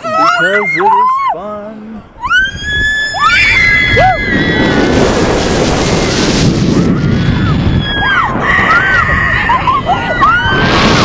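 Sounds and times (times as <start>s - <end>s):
wind rushing over microphone: 2.1s - 11.0s
riders screaming: 2.2s - 5.1s, 7.0s - 11.0s.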